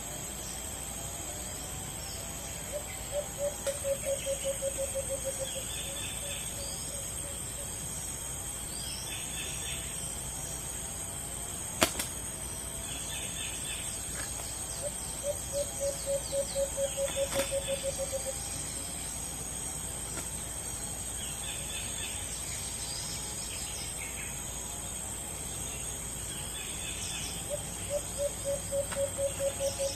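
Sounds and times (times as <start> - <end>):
high insect drone: 0.0 - 29.9
dove cooing: 2.7 - 5.6, 15.2 - 18.4, 27.5 - 29.9.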